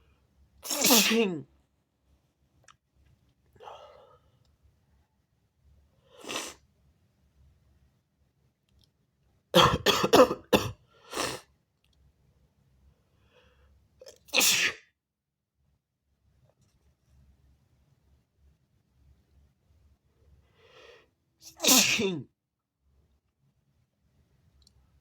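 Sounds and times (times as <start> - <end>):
person sneezing: 0.6 - 1.4, 9.6 - 11.5, 14.3 - 14.8, 21.4 - 22.3.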